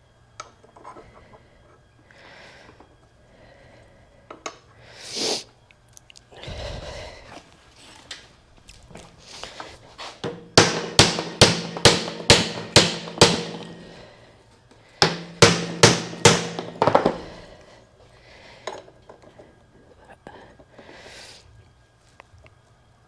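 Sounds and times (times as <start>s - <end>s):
hammer striking steel: 10.2s - 13.9s, 15.0s - 17.2s.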